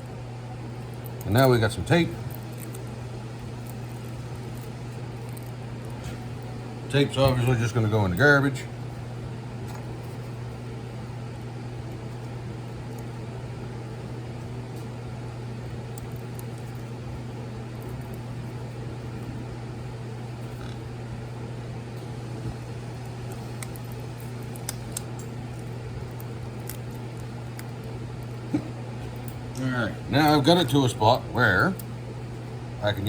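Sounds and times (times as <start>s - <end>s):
low mechanical hum: 0.0s - 33.0s
light clicks of small parts: 23.0s - 28.4s.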